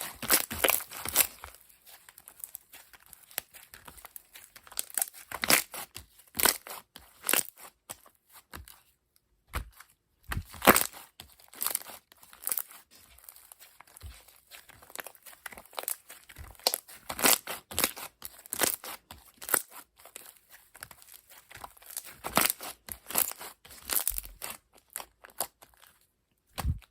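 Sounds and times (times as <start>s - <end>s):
slime crackling and popping: 10.3s - 19.8s.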